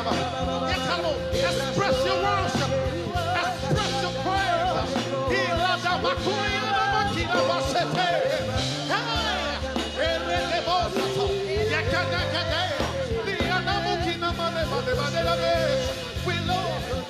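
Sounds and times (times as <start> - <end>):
gospel band playing: 0.0 - 17.0.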